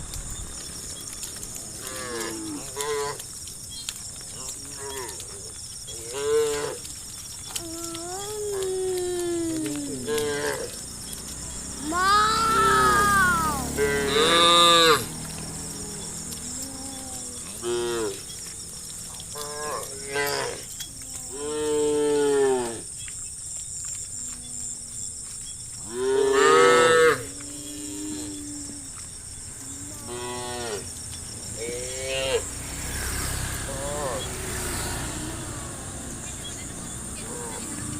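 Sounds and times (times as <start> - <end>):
cows mooing: 0.9 - 3.3, 4.4 - 6.9, 8.2 - 22.9, 25.8 - 36.4.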